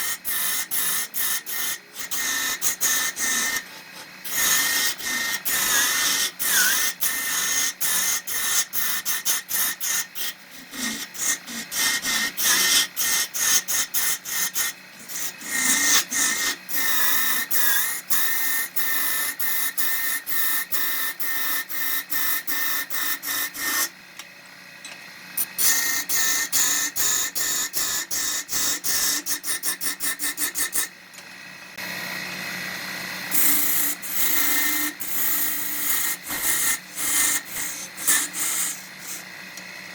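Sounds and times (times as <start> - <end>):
turning tool scraping wood: 0.0 - 23.9, 25.4 - 30.9, 32.7 - 39.7
wood lathe whine: 0.0 - 39.9.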